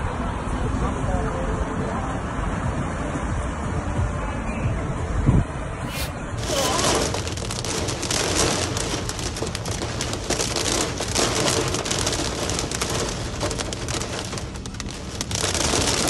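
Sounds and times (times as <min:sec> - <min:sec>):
heavy rain falling: 0:05.9 - 0:16.0.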